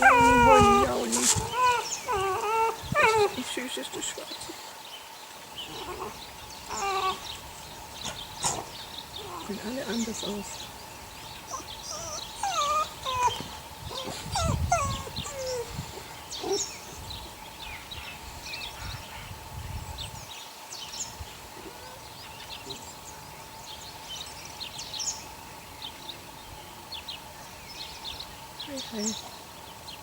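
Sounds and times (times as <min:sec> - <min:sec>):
puppies whining and squeaking: 0:00.0 - 0:03.7, 0:05.7 - 0:07.2, 0:11.5 - 0:16.7
small birds chirping: 0:00.0 - 0:30.0.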